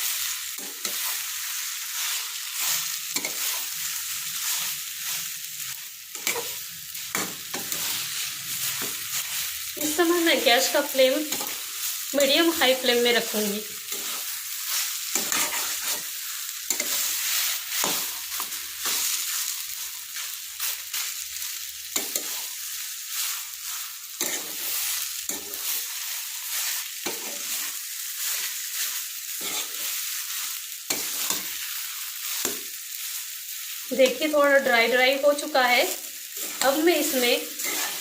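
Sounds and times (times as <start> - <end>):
food sizzling in a pan: 0.0 - 38.0
stirring scrapes against pan: 0.6 - 5.3, 6.1 - 9.5, 13.9 - 19.6, 22.0 - 32.7, 36.4 - 38.0.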